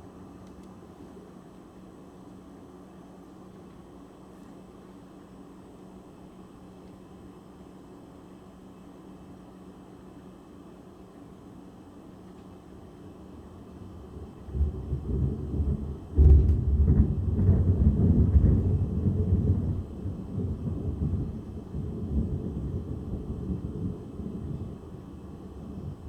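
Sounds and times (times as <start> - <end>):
thunder rolling: 13.9 - 26.0
sharp thunder crack: 15.7 - 19.7.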